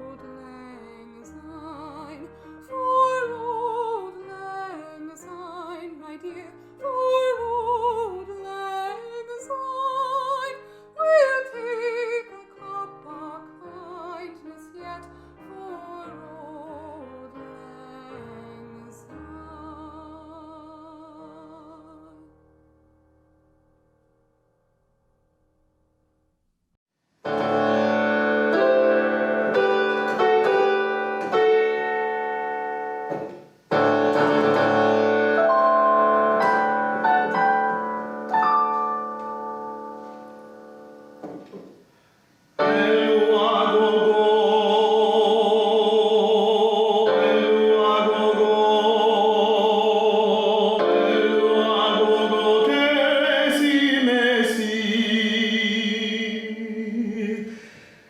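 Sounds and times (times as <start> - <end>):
classical singing voice with vibrato: 0.0 - 22.4, 42.6 - 57.9
solo piano: 0.0 - 24.4, 27.2 - 45.4, 46.9 - 56.5.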